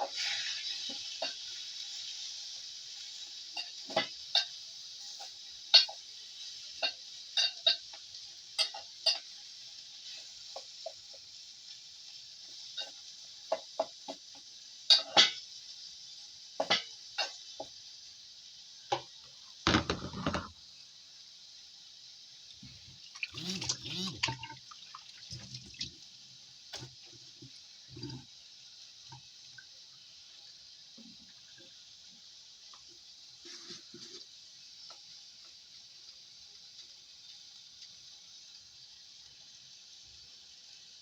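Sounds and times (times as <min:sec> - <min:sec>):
fish sizzling in a frying pan: 0:00.0 - 0:41.0
spoon knocking and scraping pan: 0:03.6 - 0:04.5, 0:05.7 - 0:06.0, 0:12.8 - 0:14.3, 0:14.9 - 0:15.4, 0:16.6 - 0:17.7, 0:19.7 - 0:20.6.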